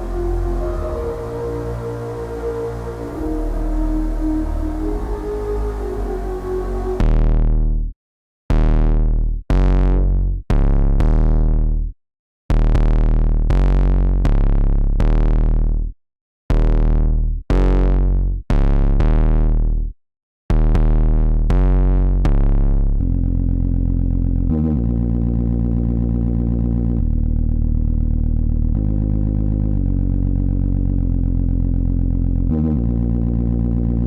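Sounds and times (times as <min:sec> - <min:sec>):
deep synthesizer bass notes: 0:00.0 - 0:07.6, 0:23.1 - 0:34.0.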